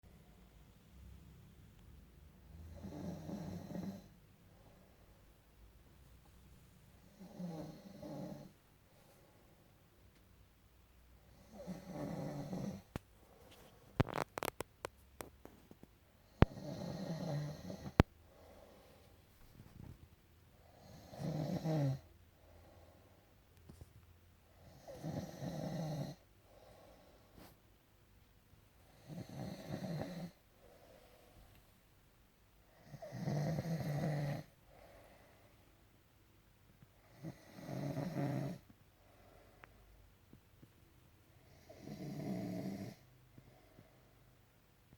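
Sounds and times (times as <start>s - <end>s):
quiet breathing: 0.1s - 14.6s, 15.4s - 27.8s, 28.6s - 44.9s
heavy snoring: 2.4s - 4.2s, 7.0s - 8.6s, 11.3s - 12.9s, 16.3s - 18.6s, 20.6s - 22.1s, 24.6s - 26.2s, 28.9s - 30.4s, 32.8s - 34.5s, 37.1s - 38.6s, 41.5s - 43.1s.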